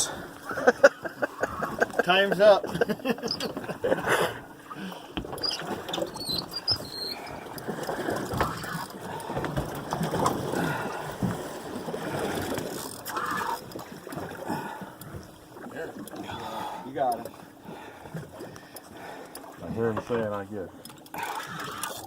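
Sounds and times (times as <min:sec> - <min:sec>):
water around boat: 0:00.0 - 0:22.0
wind: 0:00.0 - 0:22.0
brief squeaks: 0:05.4 - 0:07.3.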